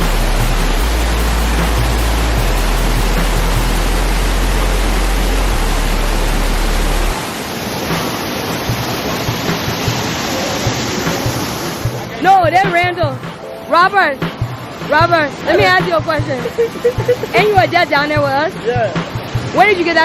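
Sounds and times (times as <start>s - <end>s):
deep low rumble: 0.0s - 7.2s
waterfall roaring: 0.0s - 20.0s.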